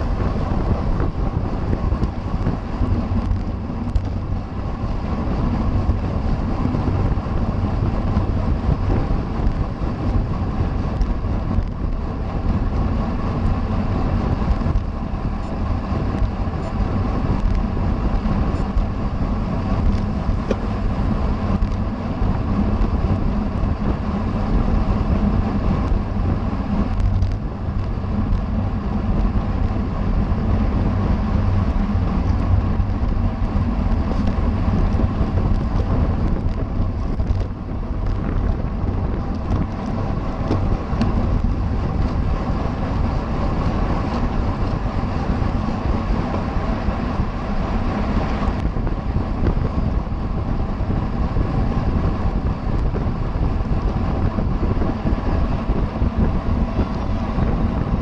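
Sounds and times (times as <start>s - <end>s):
road and tyre hiss: 0.0s - 58.0s
wind buffeting microphone: 0.0s - 58.0s.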